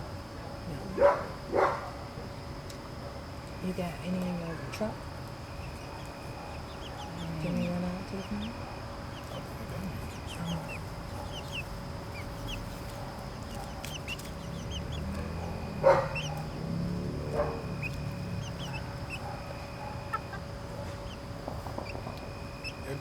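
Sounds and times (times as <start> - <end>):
chickens clucking and calling: 4.8 - 23.0.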